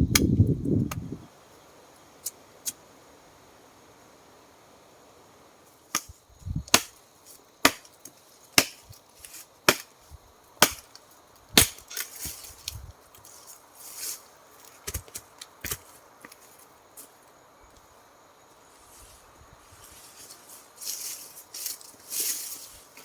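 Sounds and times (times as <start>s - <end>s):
wood chopping: 6.7s - 7.0s, 7.6s - 7.9s, 8.6s - 8.8s, 9.7s - 9.9s, 10.6s - 10.9s, 11.6s - 12.1s
rustling: 18.7s - 23.0s.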